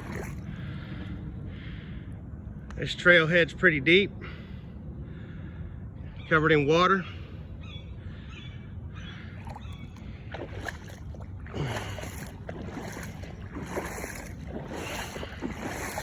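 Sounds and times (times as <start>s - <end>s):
footsteps sloshing through water: 0.0s - 1.3s, 9.2s - 16.0s
wind rumble on microphone: 0.0s - 16.0s.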